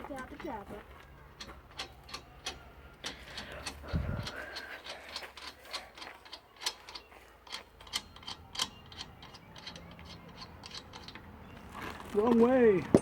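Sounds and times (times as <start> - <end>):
metal tool clicks: 1.7 - 11.3.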